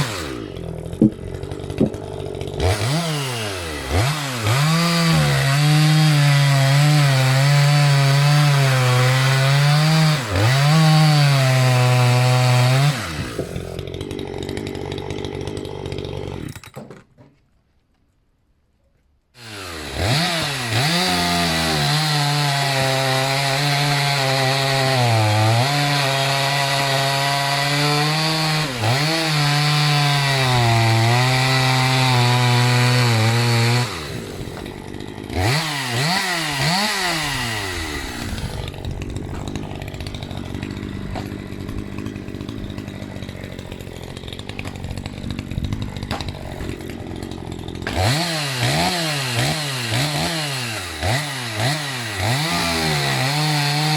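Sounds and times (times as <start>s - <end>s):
chainsaw revving and idling: 0.0s - 16.6s, 19.4s - 53.9s.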